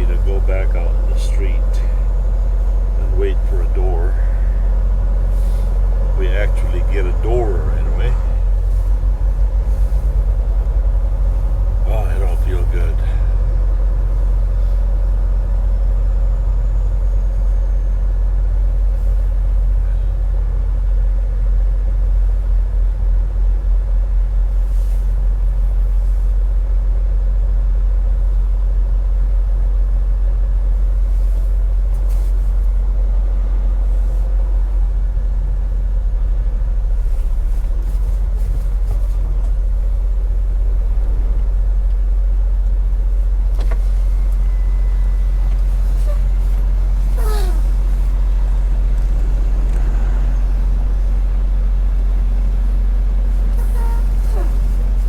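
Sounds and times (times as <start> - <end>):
diesel truck engine rumbling: 0.0 - 55.0
faint short hisses: 45.8 - 48.1, 53.4 - 55.0.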